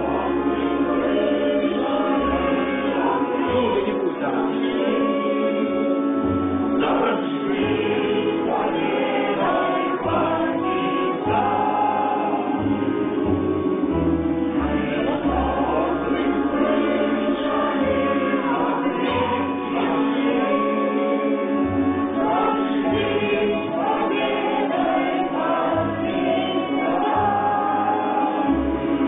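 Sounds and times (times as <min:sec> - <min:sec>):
folk choir singing: 0:00.0 - 0:29.0
low sustained accompanying notes: 0:00.0 - 0:29.0.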